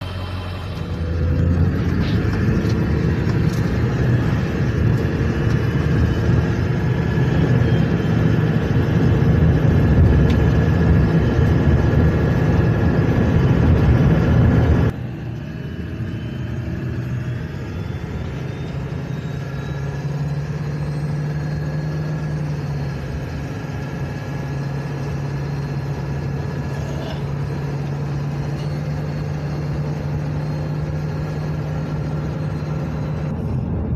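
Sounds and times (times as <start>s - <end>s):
high turbo whistle: 0.0s - 1.2s, 15.1s - 23.1s
diesel engine running: 0.0s - 33.9s.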